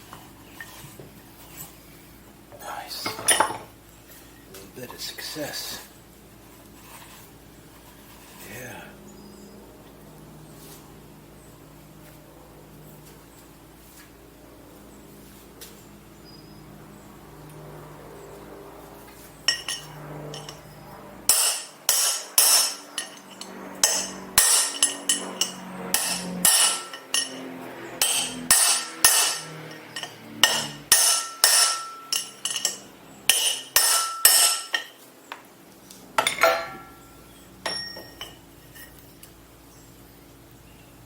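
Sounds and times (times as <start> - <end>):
hammer blows on metal: 21.3 - 27.4, 28.0 - 34.9.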